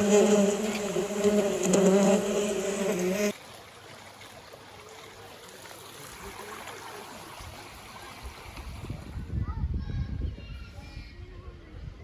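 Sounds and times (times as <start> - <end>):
forest stream flowing: 0.0 - 9.2.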